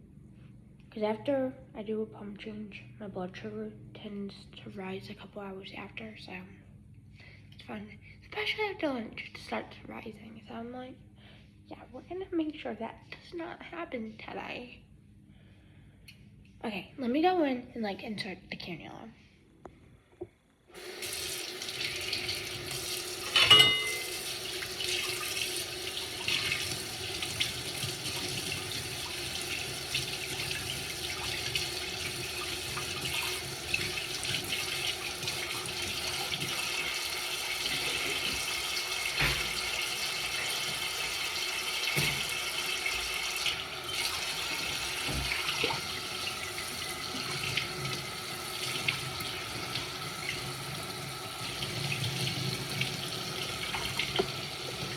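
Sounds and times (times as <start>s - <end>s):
dishware knocking and clinking: 23.3s - 24.2s
tap running into sink: 37.6s - 39.8s, 41.8s - 42.5s, 44.5s - 46.0s, 51.5s - 54.9s.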